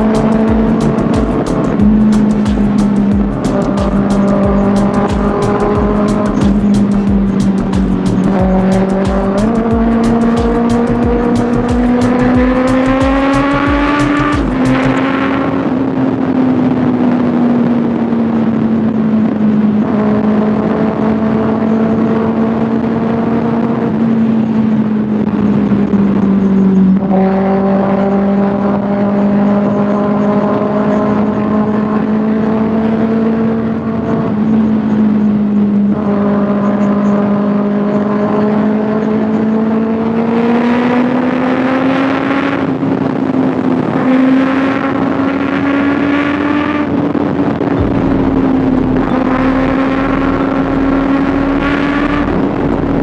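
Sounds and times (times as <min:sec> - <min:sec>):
motorcycle engine revving high: 0:00.0 - 0:53.0.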